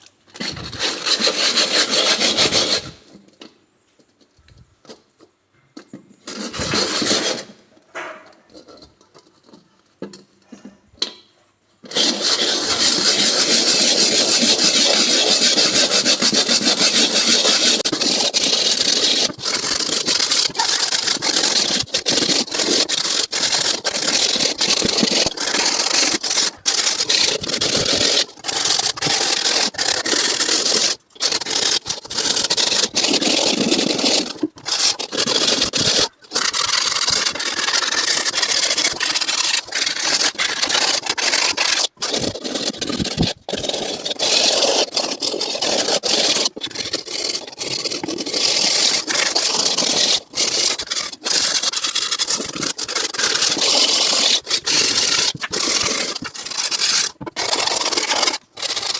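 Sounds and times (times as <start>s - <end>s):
scraper scouring a frying pan: 11.8s - 58.9s.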